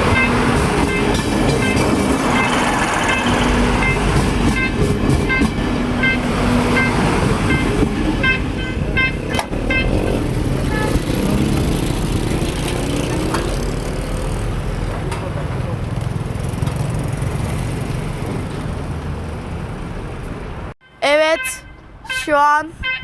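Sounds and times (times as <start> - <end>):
low rumble of rail traffic: 0.0 - 11.7.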